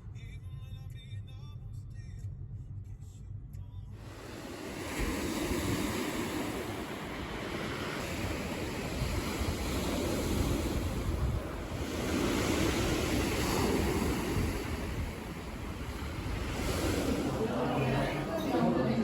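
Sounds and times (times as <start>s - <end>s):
steady rushing noise: 4.0s - 19.0s.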